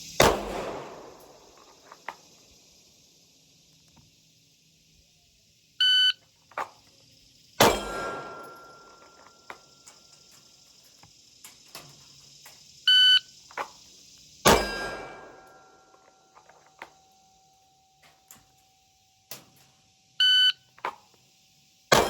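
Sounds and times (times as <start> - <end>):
pistol shot ringing: 0.2 - 1.6, 7.6 - 9.1, 14.5 - 15.7
shot timer beep: 5.8 - 6.2, 20.2 - 20.6.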